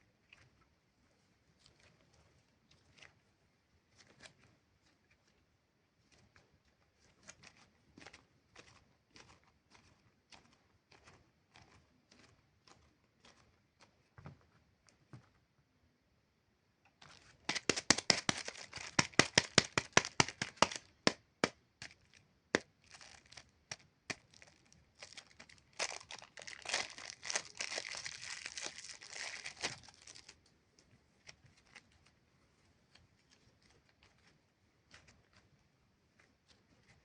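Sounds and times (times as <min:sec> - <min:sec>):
clay crackling when torn by hand: 0:17.0 - 0:30.5.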